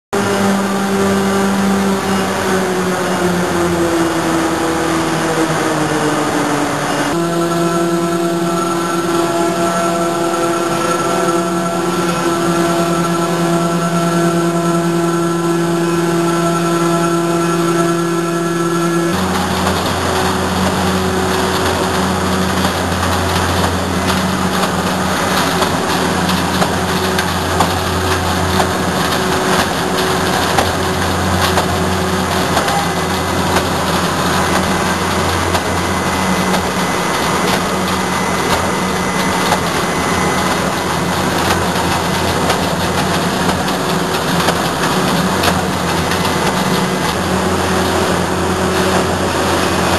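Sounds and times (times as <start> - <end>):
industrial machine noise: 0.1 - 49.9
humming tone: 0.2 - 49.9.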